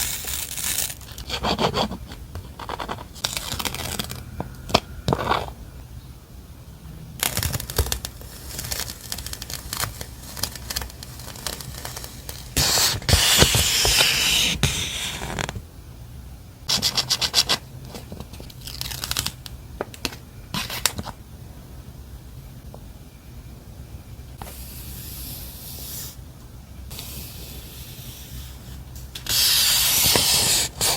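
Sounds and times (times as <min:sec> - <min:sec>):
paper and plastic rustling: 0:07.2 - 0:14.0.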